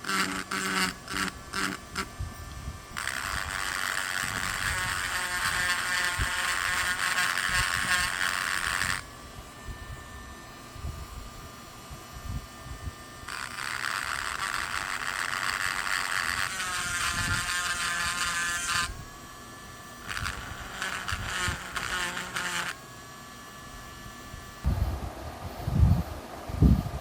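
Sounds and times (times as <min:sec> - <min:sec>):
grinding metal: 0:00.0 - 0:02.1, 0:03.0 - 0:10.1, 0:20.0 - 0:22.8
rotary tool whine: 0:00.0 - 0:24.8.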